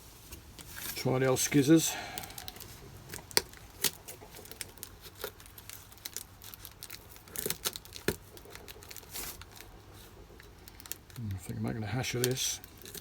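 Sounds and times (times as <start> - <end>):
packaging crinkling and tearing: 0.6 - 13.0
scissors cutting packaging: 2.2 - 9.7.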